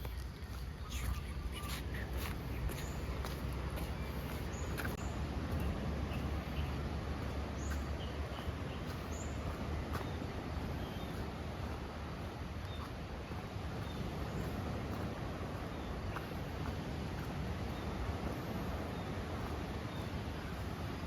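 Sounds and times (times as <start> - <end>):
steady low rumble: 0.0 - 21.0
faint bird chirps: 0.1 - 3.2.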